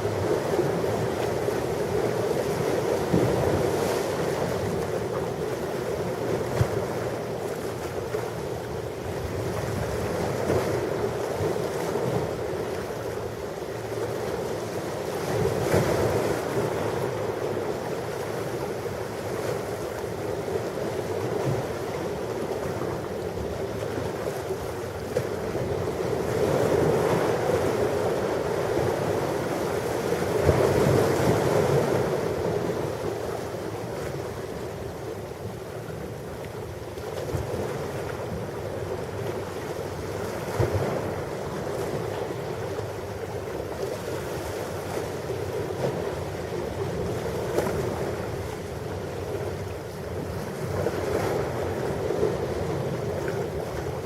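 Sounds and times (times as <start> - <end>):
ocean waves washing onto shore: 0.0 - 54.0.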